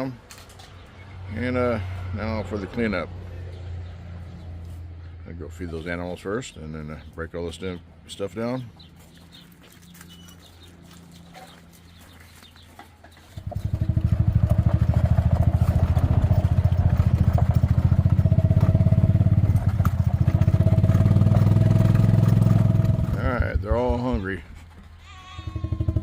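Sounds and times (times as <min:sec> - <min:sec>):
small engine starting and chugging: 0:13.0 - 0:23.4, 0:25.5 - 0:26.0.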